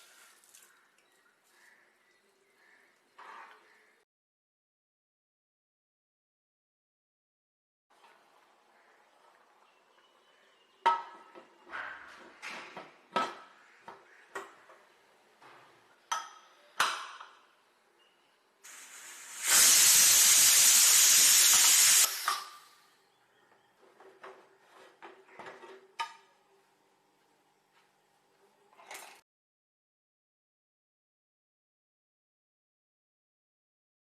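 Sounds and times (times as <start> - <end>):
steam hissing from pressure cooker: 18.7 - 22.8.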